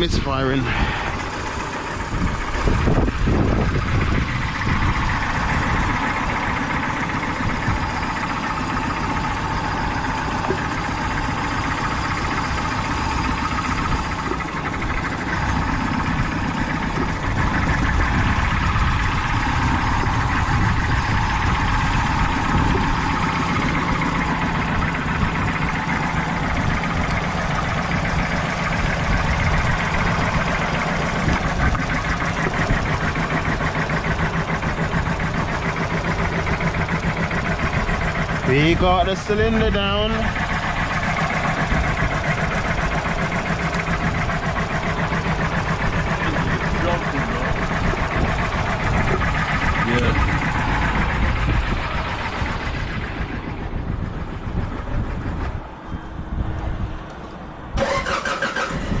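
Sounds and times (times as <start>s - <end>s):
misfiring car engine idling: 0.0s - 57.0s, 57.6s - 59.0s.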